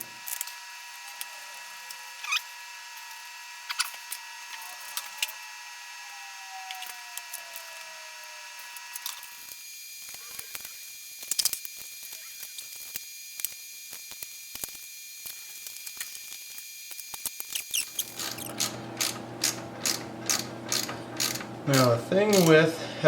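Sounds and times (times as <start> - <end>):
ratchet wrench clicking: 19.4 - 22.5.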